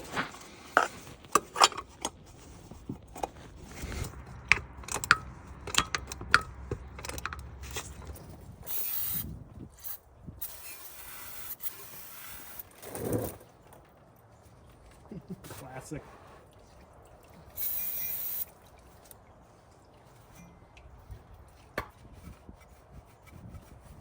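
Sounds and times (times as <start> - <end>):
ratchet and metal tools clicking: 4.1 - 12.6
aerosol spray hissing: 17.6 - 18.4.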